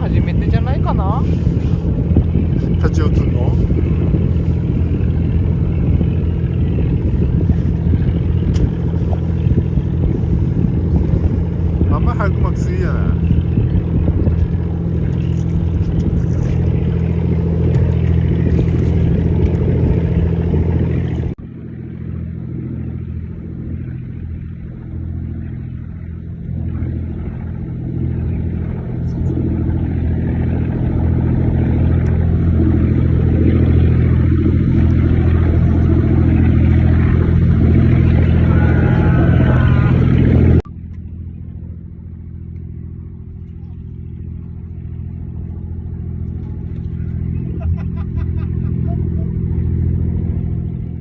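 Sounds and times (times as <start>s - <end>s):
boat engine humming: 0.0s - 51.0s.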